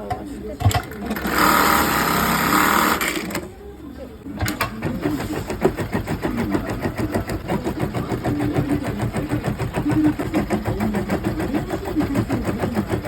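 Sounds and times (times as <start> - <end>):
sewing machine running: 1.0 - 3.5, 4.6 - 13.0.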